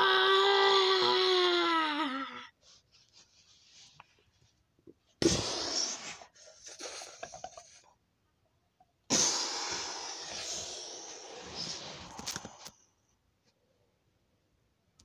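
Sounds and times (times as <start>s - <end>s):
person wailing: 0.0s - 2.5s
loud breathy whoosh: 9.1s - 12.4s
soft hissing: 9.1s - 13.0s.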